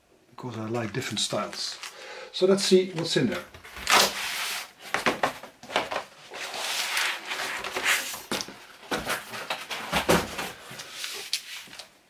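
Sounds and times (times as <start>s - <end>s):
record sleeves rustling and sliding: 2.9s - 9.8s, 10.5s - 12.0s.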